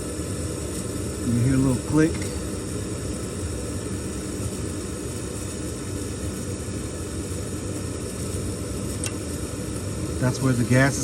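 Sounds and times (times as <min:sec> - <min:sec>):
furnace fan motor humming: 0:00.0 - 0:11.0
gas valve click: 0:09.0 - 0:09.2.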